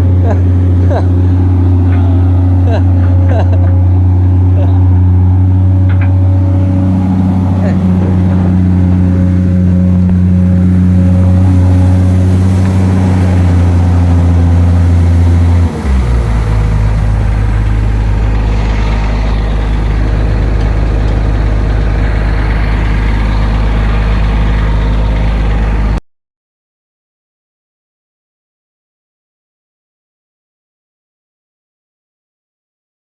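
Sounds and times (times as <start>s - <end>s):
excavator diesel engine running: 0.0s - 26.0s.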